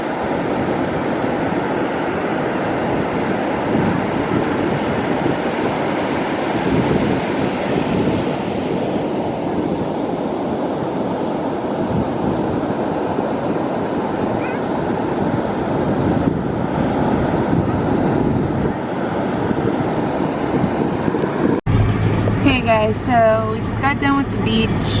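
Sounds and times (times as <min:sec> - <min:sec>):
ocean surf washing onto shore: 0:00.0 - 0:21.6
wind on microphone: 0:00.0 - 0:25.0.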